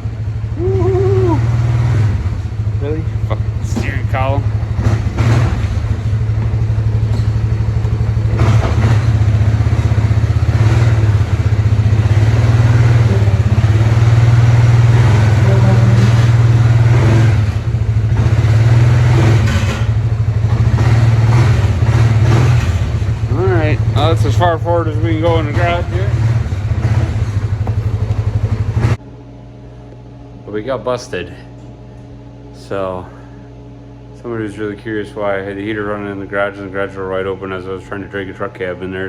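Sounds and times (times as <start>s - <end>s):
engine throbbing at low revs: 0.0s - 29.1s.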